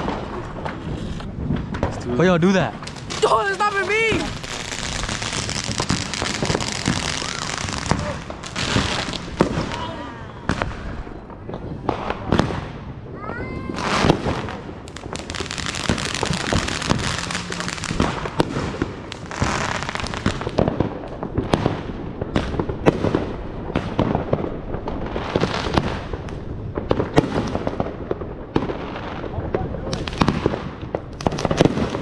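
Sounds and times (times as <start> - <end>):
hissing crackle: 0.0 - 12.4, 13.7 - 22.8
fireworks popping and cracking: 0.0 - 32.0
firework whistle: 3.8 - 11.2, 15.0 - 20.3.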